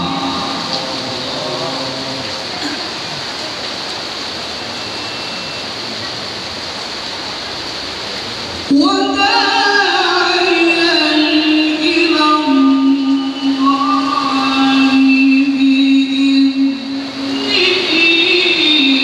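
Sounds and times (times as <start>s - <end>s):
person reciting melodically: 0.0s - 2.7s, 8.7s - 19.0s
heavy rain hissing: 0.0s - 19.0s.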